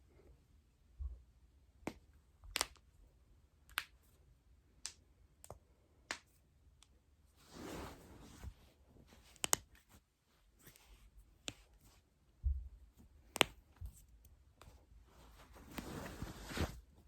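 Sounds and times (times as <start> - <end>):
soft noise: 7.3 - 17.0.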